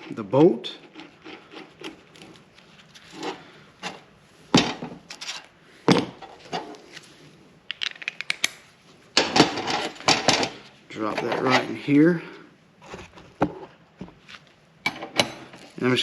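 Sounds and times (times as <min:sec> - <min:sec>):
metal tool rubbing and clinking: 0:00.0 - 0:02.4, 0:09.5 - 0:12.0.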